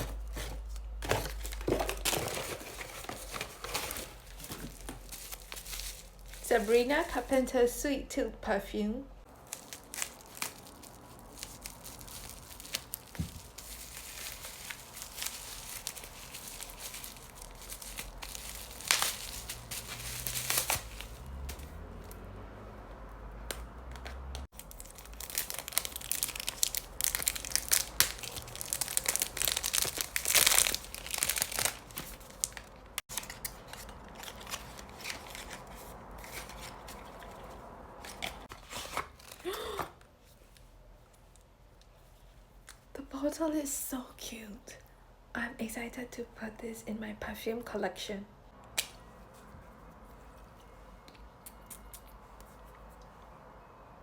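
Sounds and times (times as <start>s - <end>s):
packaging crinkling and tearing: 0.0s - 6.8s, 9.3s - 21.7s, 24.5s - 39.6s.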